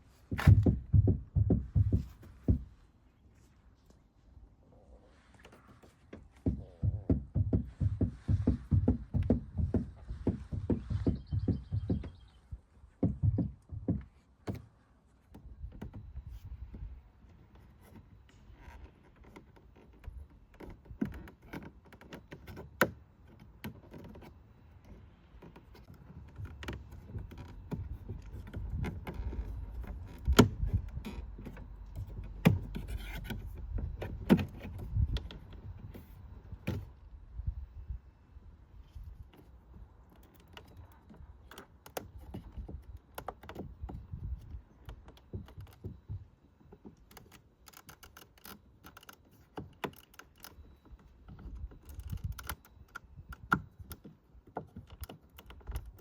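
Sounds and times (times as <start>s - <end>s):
sharp knocks and clicks: 0.3s - 2.8s, 6.0s - 14.7s, 18.8s - 36.9s, 39.3s - 56.0s.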